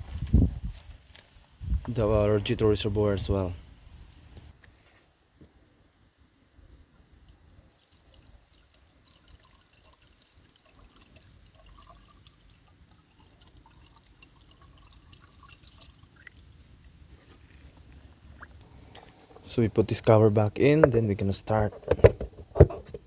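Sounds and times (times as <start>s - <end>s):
liquid trickling and dripping: 6.7s - 19.6s.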